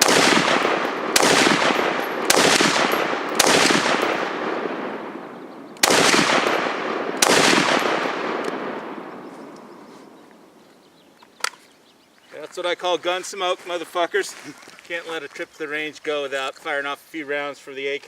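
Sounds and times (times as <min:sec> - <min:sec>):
rifle shots with echo: 0:00.0 - 0:09.8.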